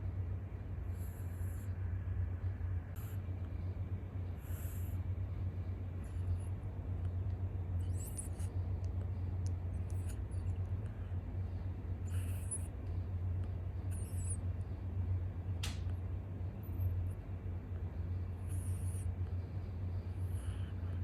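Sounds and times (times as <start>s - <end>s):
steady low hum: 0.0s - 21.0s
cat snoring with wheezy whistles: 0.9s - 1.8s, 4.4s - 5.0s, 7.8s - 12.8s, 13.8s - 14.8s, 18.0s - 21.0s.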